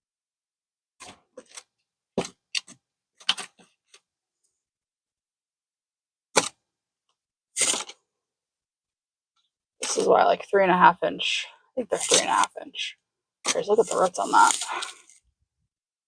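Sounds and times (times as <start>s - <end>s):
plastic pots clacking and rustling: 13.8s - 15.2s.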